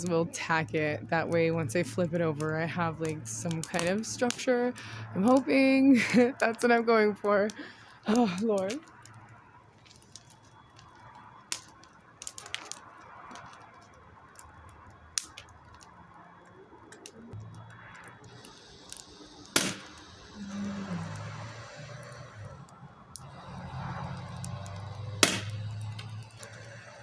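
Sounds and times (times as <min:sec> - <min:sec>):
nail gun firing: 0:19.4 - 0:20.1, 0:25.2 - 0:25.6.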